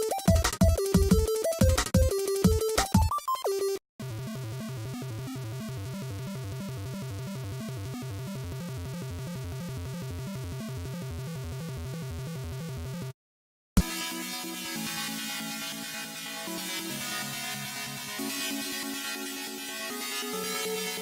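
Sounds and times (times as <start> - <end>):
music with pulsing beat: 0.0 - 3.2.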